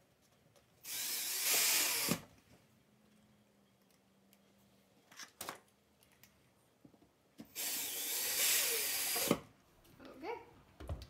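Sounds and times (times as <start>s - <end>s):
power drill driving a screw: 0.8s - 2.3s, 7.5s - 9.4s.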